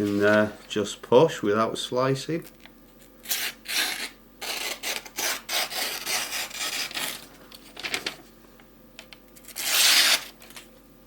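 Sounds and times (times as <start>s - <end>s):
knife blade cutting paper: 3.3s - 7.3s, 9.4s - 10.6s.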